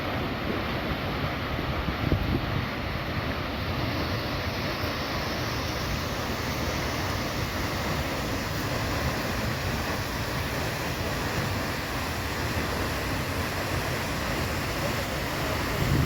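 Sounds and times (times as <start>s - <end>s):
waterfall roaring: 0.0s - 16.0s.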